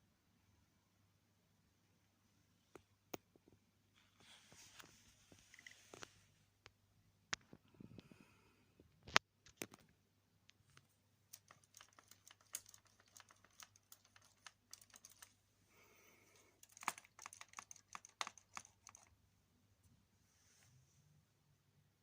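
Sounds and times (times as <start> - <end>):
soft hiss: 1.6 - 9.0, 19.3 - 21.6
small hard parts clicking: 11.3 - 15.4, 16.2 - 19.1.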